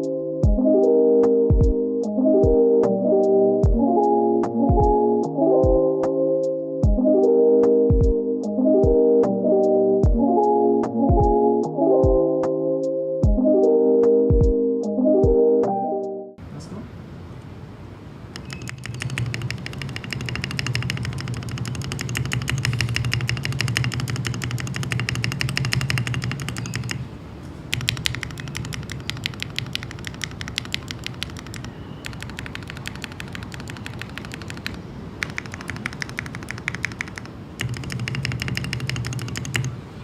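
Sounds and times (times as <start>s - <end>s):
mechanical keyboard typing: 18.4s - 27.1s, 27.7s - 39.8s.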